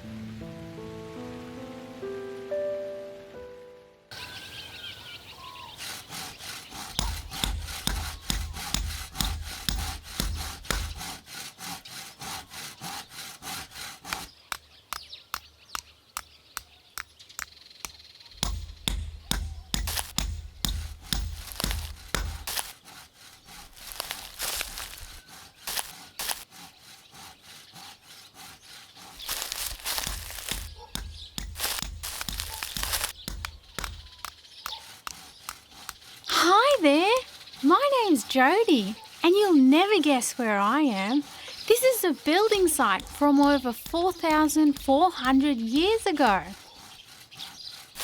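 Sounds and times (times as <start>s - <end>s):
hand sawing and knocking wood: 5.4s - 48.0s
deep dull thuds: 18.4s - 22.5s.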